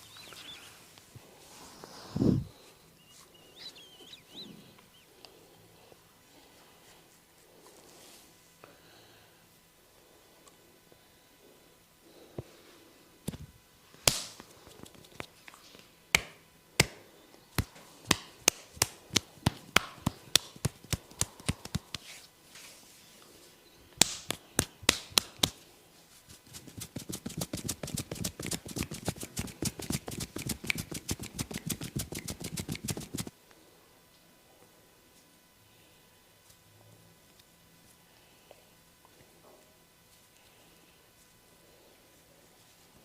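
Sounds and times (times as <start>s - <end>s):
hands slapping and tapping head: 14.0s - 17.0s, 17.6s - 22.2s, 24.0s - 25.6s, 26.5s - 33.3s.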